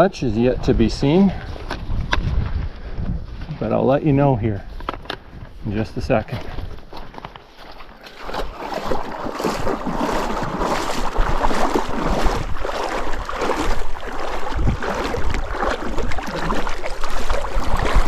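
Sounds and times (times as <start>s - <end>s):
water sloshing around wading legs: 6.2s - 18.0s.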